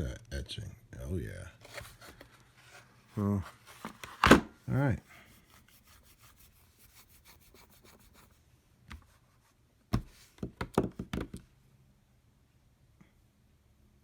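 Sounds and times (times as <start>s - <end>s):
knocks and taps on packaging: 9.9s - 11.5s.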